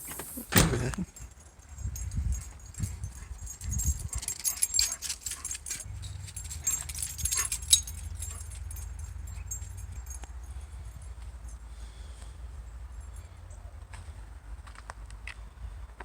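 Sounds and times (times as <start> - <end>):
dog collar tags jingling: 0.0 - 11.6
low steady rumble: 1.7 - 14.6.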